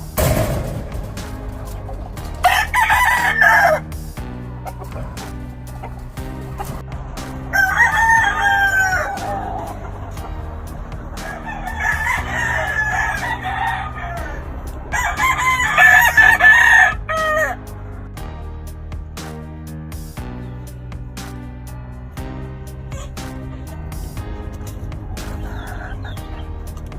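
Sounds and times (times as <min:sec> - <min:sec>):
background music: 0:00.0 - 0:26.9
roosters crowing: 0:01.2 - 0:17.8, 0:24.7 - 0:26.8.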